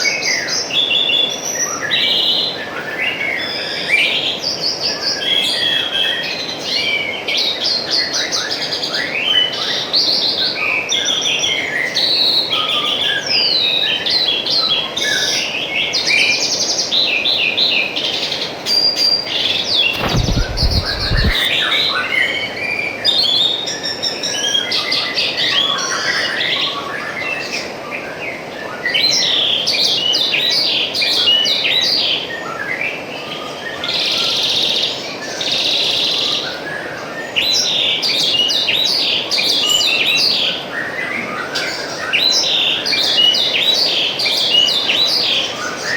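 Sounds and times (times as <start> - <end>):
small birds chirping: 17.8 - 23.0
low thud: 19.9 - 21.5.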